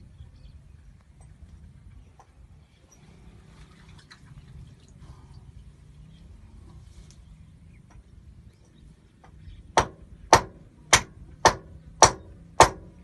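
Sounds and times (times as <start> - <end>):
hammer strikes: 9.8 - 13.0.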